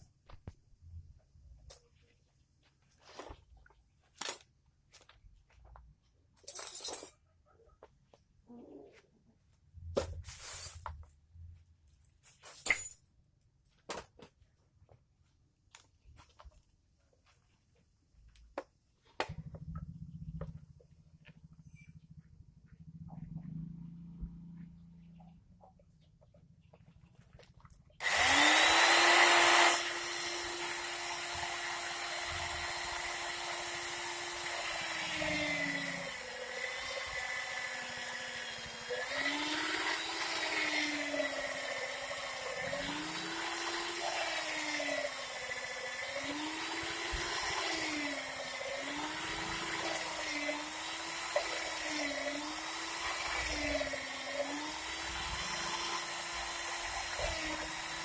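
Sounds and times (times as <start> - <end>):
rotary hammer drill chipping concrete: 28.0 - 58.0.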